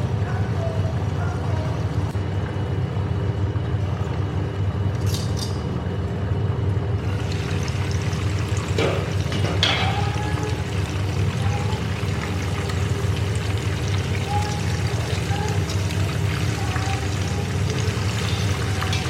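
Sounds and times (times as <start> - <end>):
steady low hum: 0.0 - 19.0
water pouring and splashing: 7.0 - 19.0.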